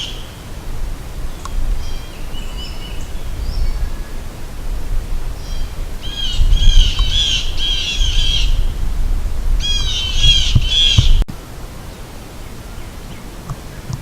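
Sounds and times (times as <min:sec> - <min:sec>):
bird squawking calls: 0:00.0 - 0:00.4, 0:01.3 - 0:04.6, 0:05.3 - 0:08.7, 0:09.6 - 0:11.2.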